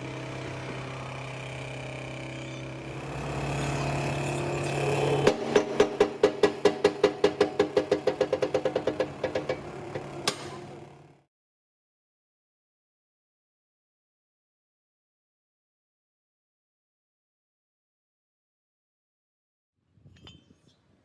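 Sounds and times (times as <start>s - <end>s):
hydraulic press humming: 0.0s - 11.2s.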